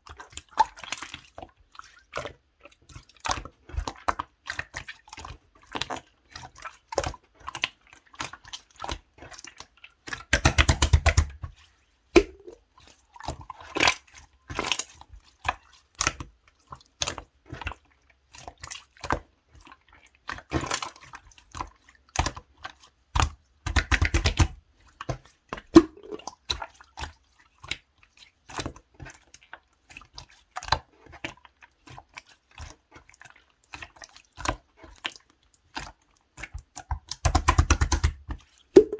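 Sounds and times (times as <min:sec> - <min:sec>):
slime wet clicks and pops: 0:10.4 - 0:11.3, 0:12.2 - 0:12.6, 0:23.7 - 0:24.5, 0:25.8 - 0:26.2, 0:37.2 - 0:38.2.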